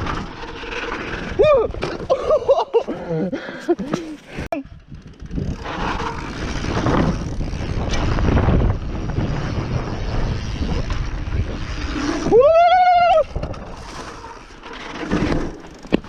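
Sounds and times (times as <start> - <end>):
bike tyre and frame rattle: 0.0 - 3.0, 3.6 - 16.0
wind buffeting microphone: 4.6 - 13.9.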